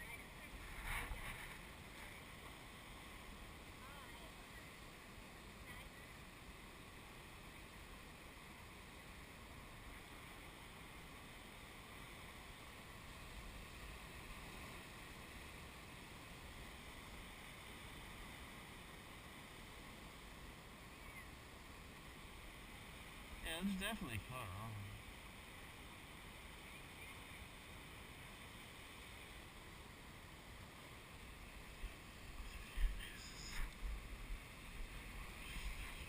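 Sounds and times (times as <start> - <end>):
ocean waves breaking: 21.4 - 26.5.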